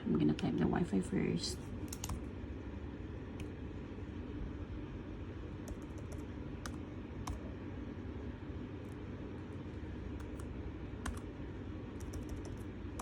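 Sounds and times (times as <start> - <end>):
low background rumble: 0.0 - 13.0
soft keyboard clicks: 1.8 - 2.2, 10.2 - 11.2, 12.0 - 12.6.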